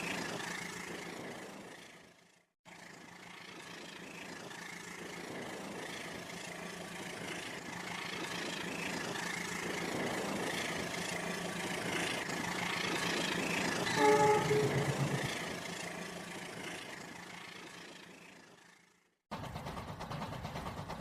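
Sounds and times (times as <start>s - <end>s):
engine humming: 2.7s - 18.6s.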